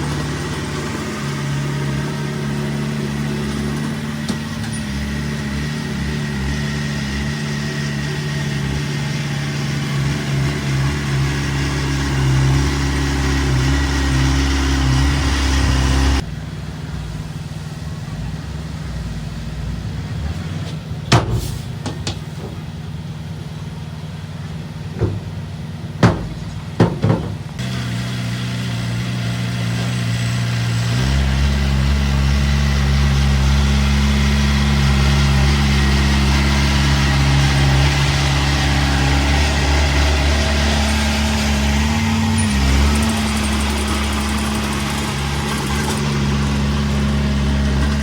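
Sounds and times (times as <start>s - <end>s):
diesel engine revving: 0.0s - 48.0s
sharp metallic clanks: 20.7s - 22.8s, 24.9s - 27.6s.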